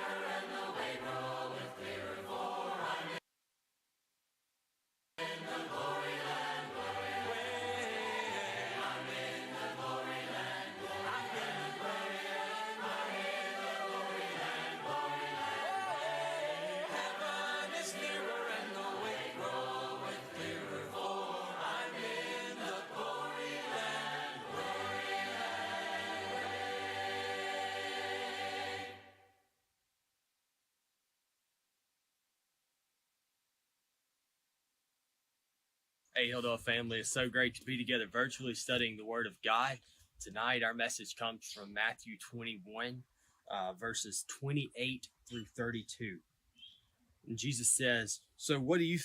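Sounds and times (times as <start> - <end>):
group singing a hymn: 0.0 - 3.2, 5.2 - 29.2.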